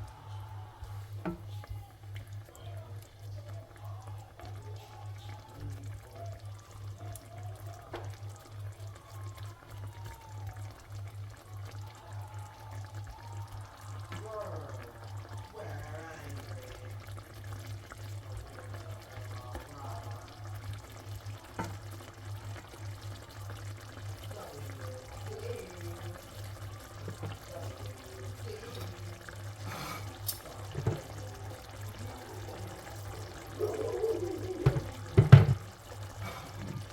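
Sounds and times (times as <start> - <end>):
liquid noise: 12.2 - 36.9.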